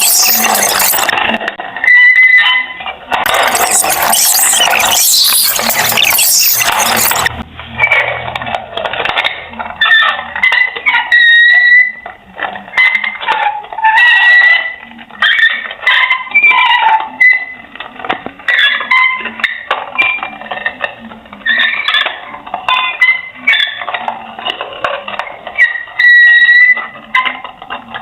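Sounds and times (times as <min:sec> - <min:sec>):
clicks: 0:00.0 - 0:01.4, 0:03.1 - 0:07.4
high-pitched squeaks and squeals: 0:00.0 - 0:08.2, 0:09.2 - 0:28.0.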